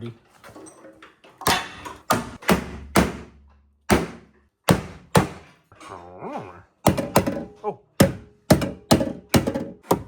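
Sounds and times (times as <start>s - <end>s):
knocks and thuds on car body: 1.5s - 5.4s, 6.8s - 10.0s.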